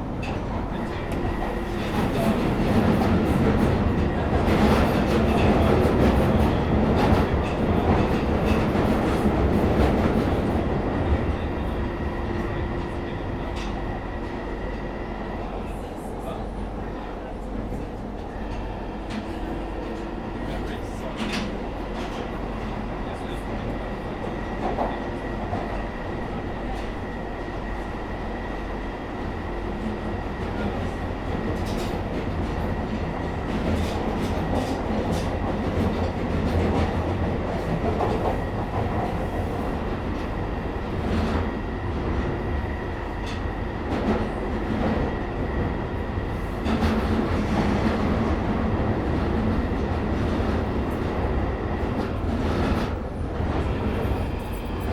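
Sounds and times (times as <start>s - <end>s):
train wheels rumbling on rails: 0.0s - 54.9s.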